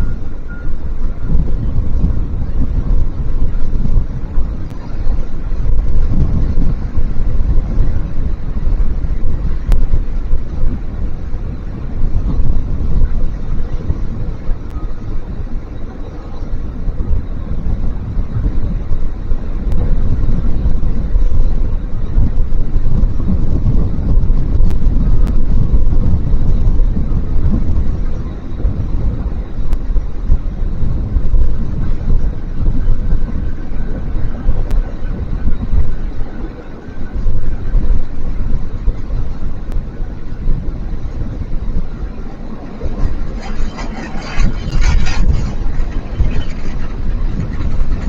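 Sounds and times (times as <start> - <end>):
wind buffeting microphone: 0.0 - 48.0.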